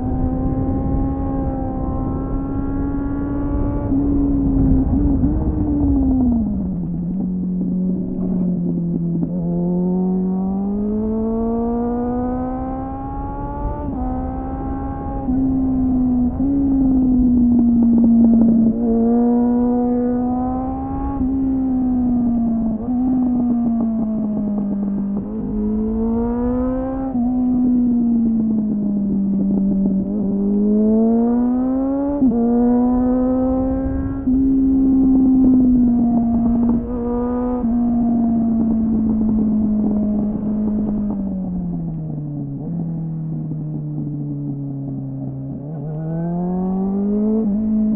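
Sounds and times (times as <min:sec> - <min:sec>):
motorcycle engine revving: 0:00.0 - 0:47.9.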